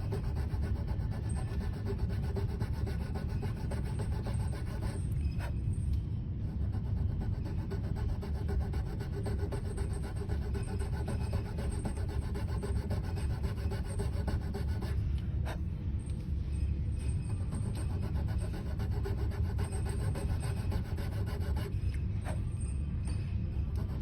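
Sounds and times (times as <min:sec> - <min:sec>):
abrasive rasping on wood: 0:00.0 - 0:05.0, 0:06.8 - 0:14.9, 0:17.4 - 0:21.7.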